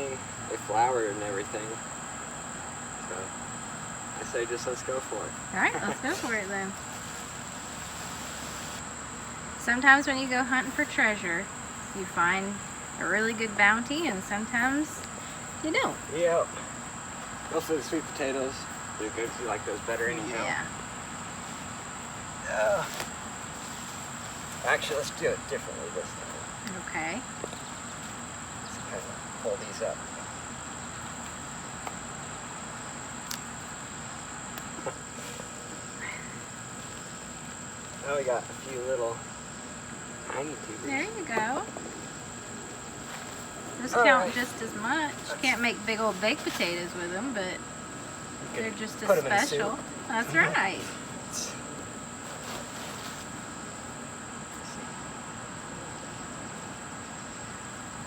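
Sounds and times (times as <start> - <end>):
insects chirring: 0.0 - 58.0
faint rustles: 5.7 - 9.4, 10.5 - 26.5, 34.8 - 39.1, 40.2 - 54.9.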